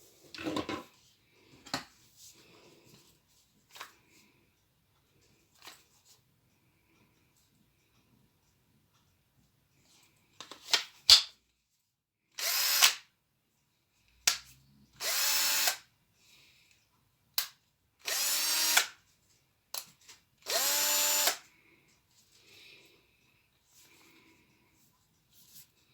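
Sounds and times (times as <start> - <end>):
cordless drill motor spinning: 12.4 - 12.9, 15.0 - 15.8, 18.0 - 19.0, 20.4 - 21.4.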